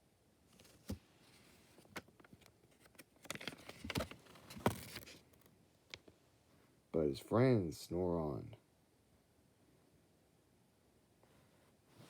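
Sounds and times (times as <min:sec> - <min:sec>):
paper page rustling: 0:00.5 - 0:05.5.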